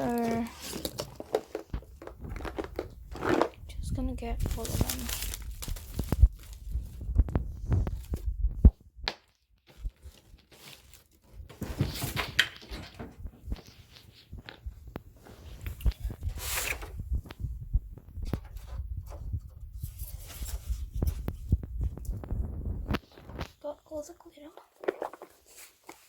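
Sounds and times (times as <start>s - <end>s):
plastic containers handled: 0.0s - 26.0s.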